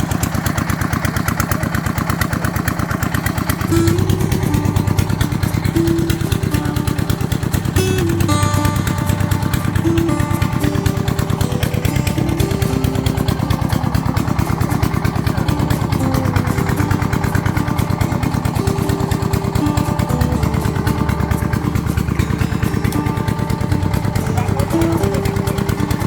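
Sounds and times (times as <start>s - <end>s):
small engine running: 0.0s - 26.0s.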